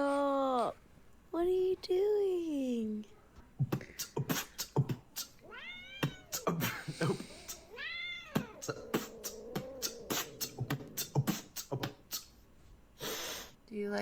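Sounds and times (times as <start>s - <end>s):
cat meowing: 5.4s - 6.6s, 7.2s - 11.2s.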